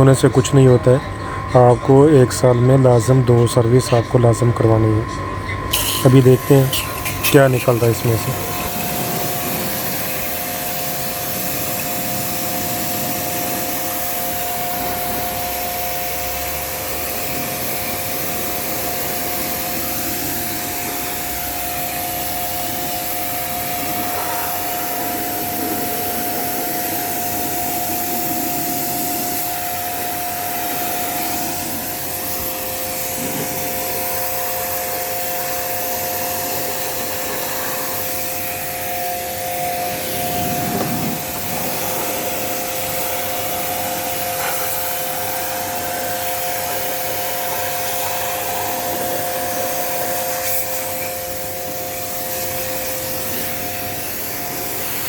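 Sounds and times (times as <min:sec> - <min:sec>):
small electric motor humming: 0:00.0 - 0:55.0
hiss of rushing air or spray: 0:17.0 - 0:55.0.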